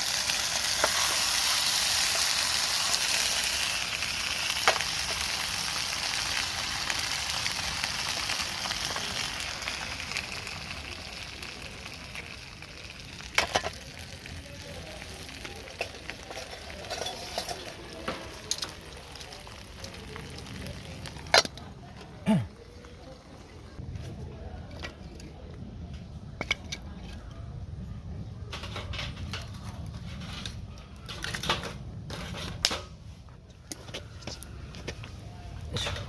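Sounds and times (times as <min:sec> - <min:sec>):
dumplings sizzling in frying pan: 0:00.0 - 0:21.4.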